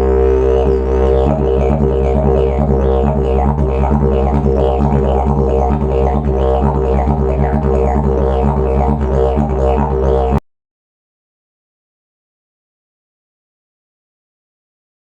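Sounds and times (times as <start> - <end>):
didgeridoo drone: 0.0 - 10.4.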